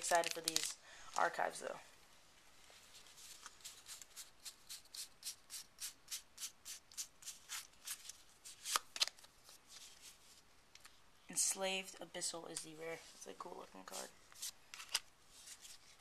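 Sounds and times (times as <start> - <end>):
trading cards rubbing together: 3.1 - 8.8.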